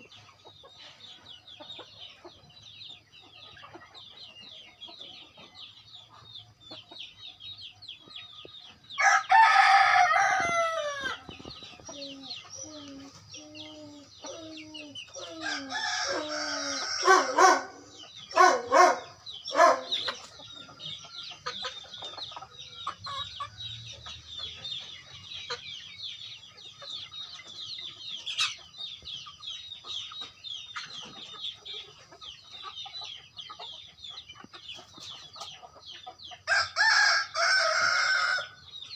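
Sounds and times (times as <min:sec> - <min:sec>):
chickens clucking: 0:00.0 - 0:38.9
chicks cheeping: 0:00.0 - 0:38.9
rooster crowing: 0:09.0 - 0:11.2, 0:15.3 - 0:19.9, 0:36.5 - 0:38.6.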